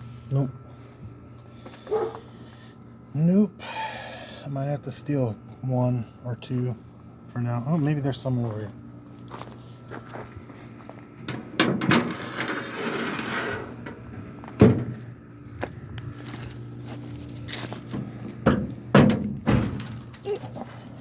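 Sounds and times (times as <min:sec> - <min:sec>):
rustling shuffle: 0:07.7 - 0:11.1, 0:14.9 - 0:18.4
objects knocking and clunking: 0:11.2 - 0:12.6.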